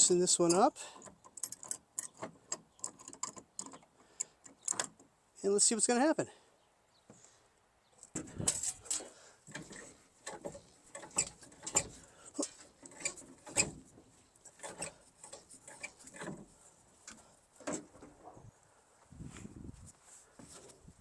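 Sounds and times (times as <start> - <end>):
metallic clicks and knocks: 0.0 - 5.1, 8.0 - 16.5.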